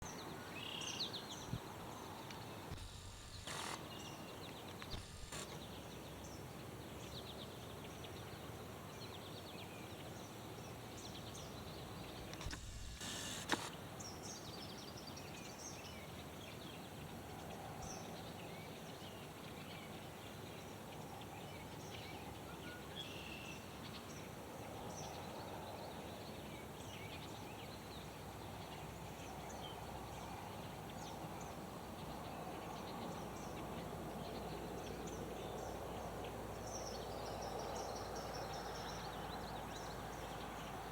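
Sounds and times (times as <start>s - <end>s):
small birds chirping: 0.1s - 8.4s, 10.6s - 16.3s
outdoor background hiss: 0.1s - 24.8s.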